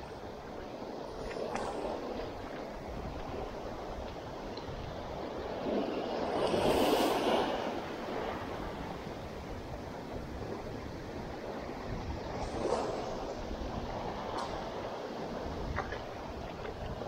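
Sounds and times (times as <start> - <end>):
sea waves washing in: 0.0 - 17.0
hiss of surf: 5.4 - 11.6.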